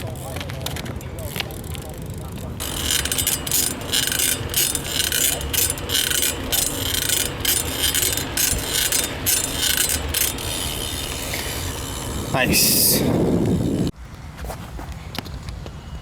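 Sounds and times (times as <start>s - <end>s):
bike hub ratcheting: 0.0s - 13.9s.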